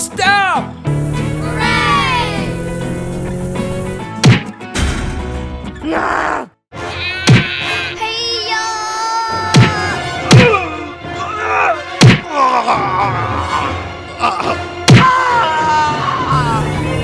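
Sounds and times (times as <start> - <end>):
background music: 0.0 - 17.0
sharp thuds: 4.2 - 5.5, 12.0 - 12.2, 14.9 - 15.1.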